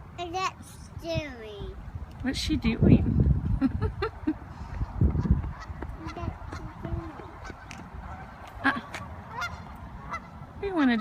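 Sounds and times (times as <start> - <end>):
geese honking: 5.1 - 11.0.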